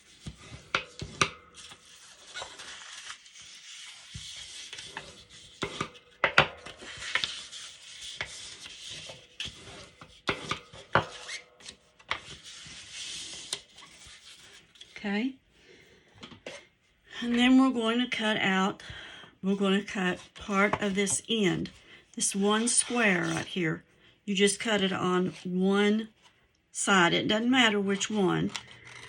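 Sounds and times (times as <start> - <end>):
stiff paper crackling: 0.0 - 6.1
paper rubbing along folds: 0.0 - 15.0.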